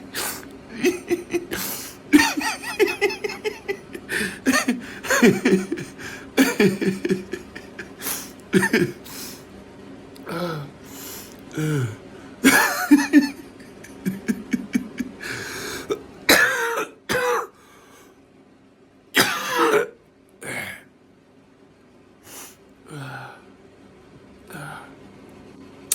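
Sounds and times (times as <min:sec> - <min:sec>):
person coughing: 0:00.1 - 0:09.3, 0:11.6 - 0:17.6, 0:19.2 - 0:20.8
voiced breaths: 0:01.5 - 0:02.1, 0:04.0 - 0:06.4, 0:10.2 - 0:12.4, 0:15.1 - 0:16.0.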